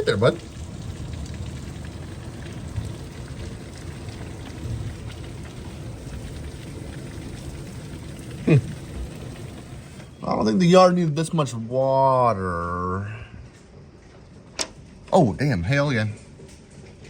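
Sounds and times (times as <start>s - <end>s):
heavy rain falling: 0.0s - 10.2s.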